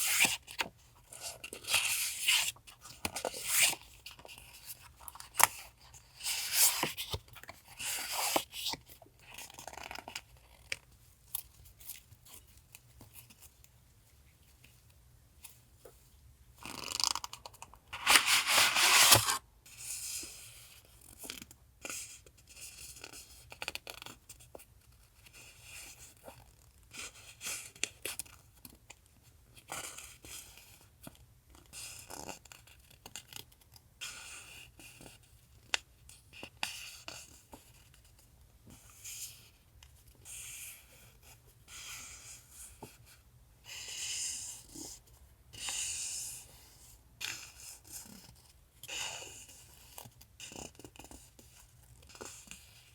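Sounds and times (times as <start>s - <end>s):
paper rustling and crinkling: 17.9s - 19.4s.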